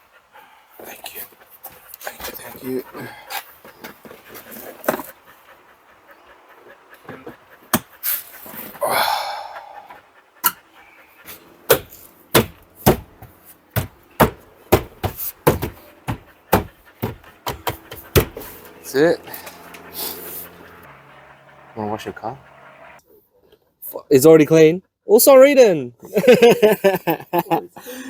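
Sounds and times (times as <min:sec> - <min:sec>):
sharp knocks on door panel: 0:11.7 - 0:13.2, 0:13.8 - 0:18.4.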